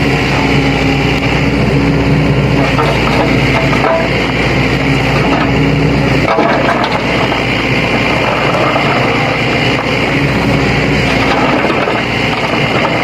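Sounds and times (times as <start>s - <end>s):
excavator diesel engine running: 0.0s - 13.0s.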